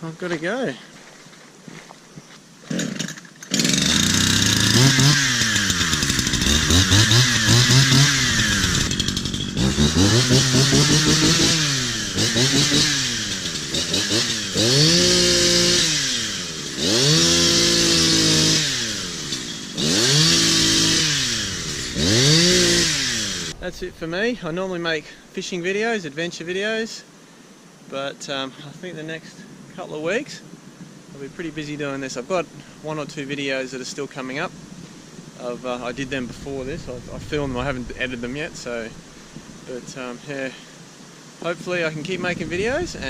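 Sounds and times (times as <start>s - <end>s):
chainsaw cutting timber: 2.6s - 23.6s.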